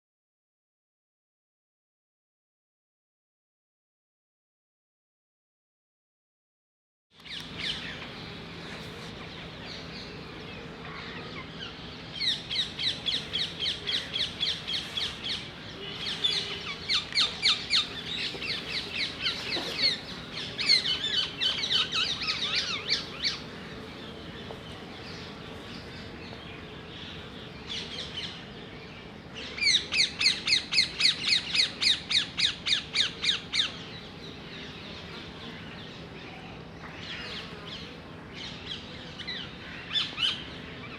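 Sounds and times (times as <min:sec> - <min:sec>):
bees buzzing: 0:07.6 - 0:30.4, 0:32.2 - 0:38.6.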